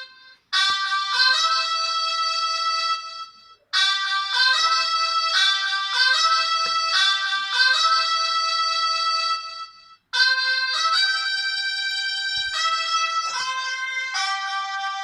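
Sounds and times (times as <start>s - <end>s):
polyphonic ringtone melody: 0.0s - 15.0s.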